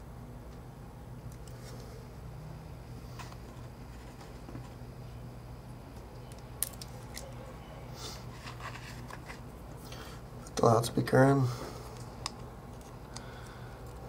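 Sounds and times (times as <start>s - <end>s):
low electrical hum: 0.0s - 14.0s
small phone parts clicking: 6.2s - 7.4s.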